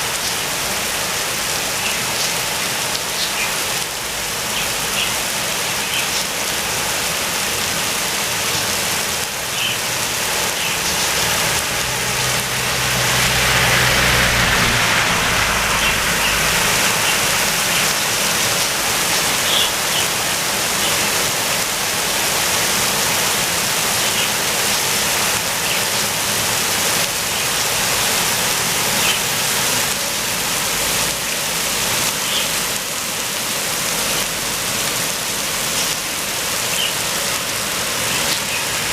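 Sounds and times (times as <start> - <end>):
heavy rain pouring: 0.0 - 38.9
low rumble: 11.2 - 17.6.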